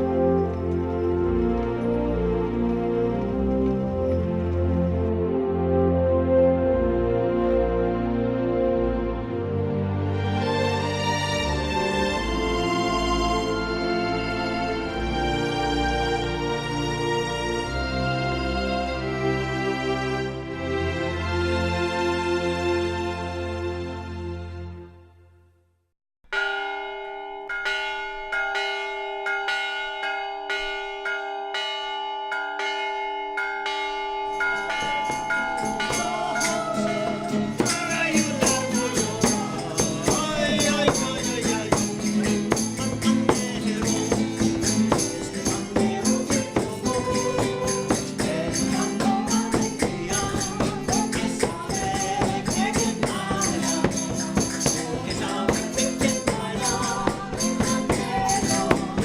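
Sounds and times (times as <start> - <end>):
person singing: 10.4 - 15.6, 34.8 - 59.0
band with percussion: 34.6 - 59.0.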